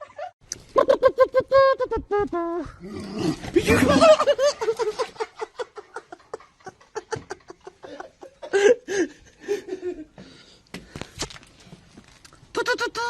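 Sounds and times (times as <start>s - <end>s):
person laughing: 0.0s - 2.8s, 3.6s - 10.1s.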